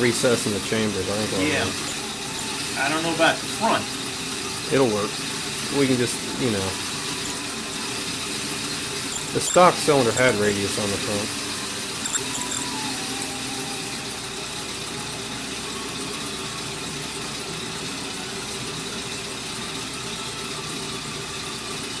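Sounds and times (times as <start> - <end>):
machine tool cutting metal: 4.5 - 13.6.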